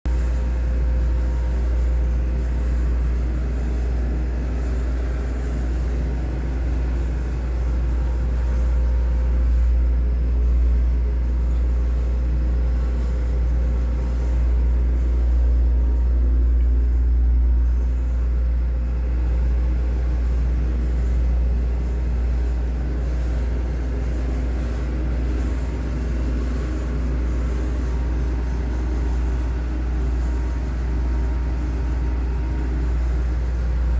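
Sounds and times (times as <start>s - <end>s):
humidifier low rumble: 0.1s - 33.9s
faint hum: 4.8s - 33.9s.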